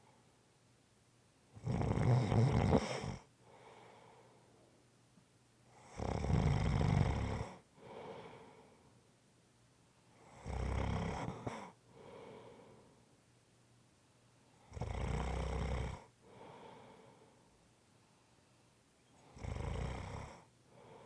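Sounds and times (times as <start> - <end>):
soft breath: 3.4 - 4.8, 7.8 - 9.0, 11.5 - 13.2, 16.2 - 19.3, 20.6 - 21.0.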